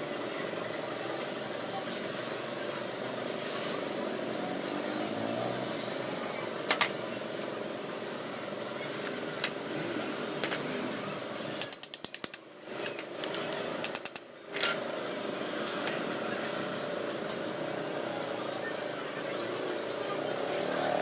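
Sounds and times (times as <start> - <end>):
ratchet wrench clicking: 11.6 - 14.3.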